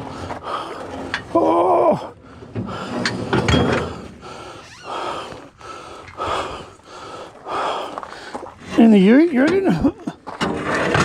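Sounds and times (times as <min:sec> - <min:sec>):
man breathing hard and gasping: 0:01.9 - 0:08.7.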